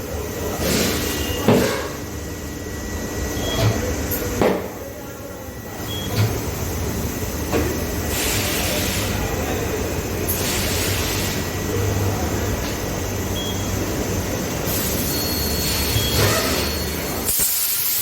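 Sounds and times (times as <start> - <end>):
compressed air hissing: 17.3 - 18.0.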